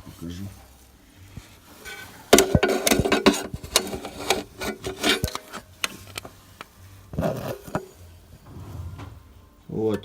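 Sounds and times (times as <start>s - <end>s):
rubbing and scraping: 1.6s - 6.3s
sharp clicks and knocks: 2.3s - 6.3s.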